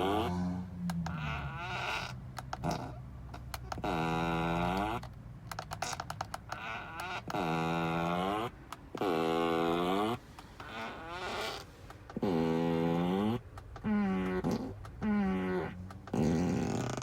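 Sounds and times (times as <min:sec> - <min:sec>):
crackling clicks: 0:01.9 - 0:04.0, 0:04.6 - 0:07.4, 0:13.4 - 0:15.1, 0:15.8 - 0:17.0
fart sound effects: 0:12.2 - 0:17.0.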